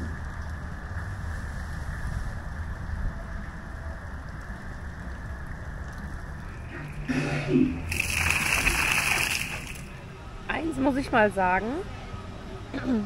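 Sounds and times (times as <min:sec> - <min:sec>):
running and splashing water: 0:07.8 - 0:10.0.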